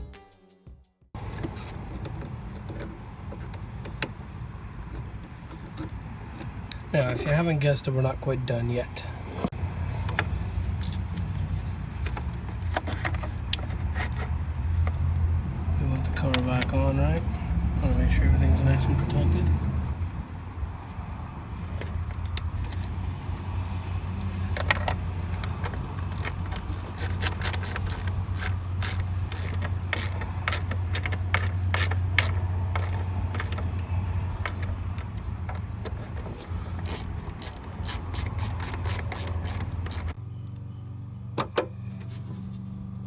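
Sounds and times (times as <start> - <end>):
hand ratchet clicking: 24.2 - 40.2.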